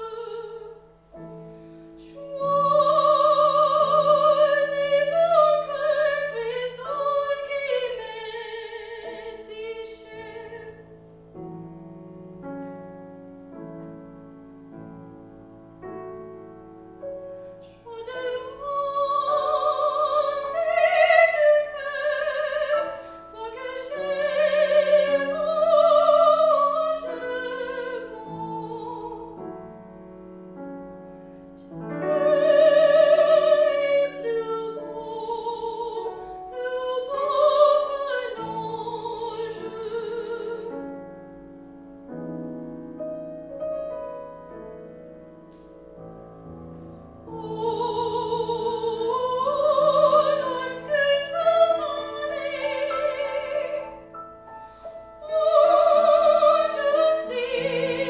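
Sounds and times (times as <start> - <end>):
piano: 0.0 - 58.0
operatic singing with vibrato: 2.0 - 10.9, 17.6 - 29.4, 31.6 - 40.8, 47.2 - 58.0.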